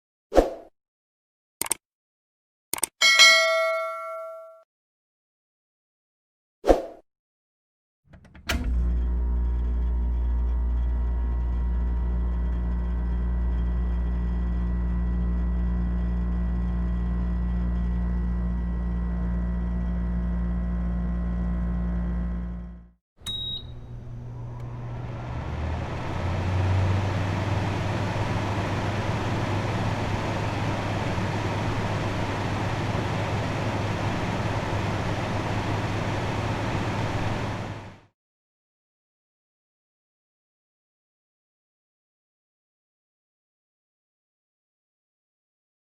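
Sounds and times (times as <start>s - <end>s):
air conditioner click: 8.1s - 9.2s, 23.2s - 37.8s
brief high beep: 23.3s - 23.9s
fan airflow whoosh: 24.2s - 38.0s.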